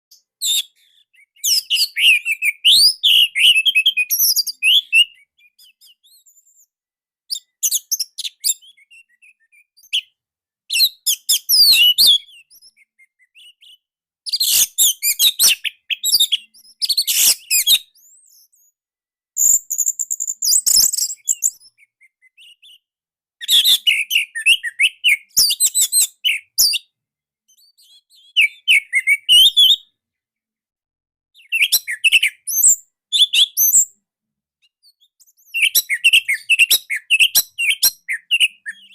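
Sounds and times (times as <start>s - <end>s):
thrush singing quick whistles: 0.2s - 6.5s, 10.7s - 18.6s, 19.4s - 22.8s, 23.4s - 26.9s, 27.9s - 29.8s, 31.4s - 34.0s, 35.1s - 38.9s.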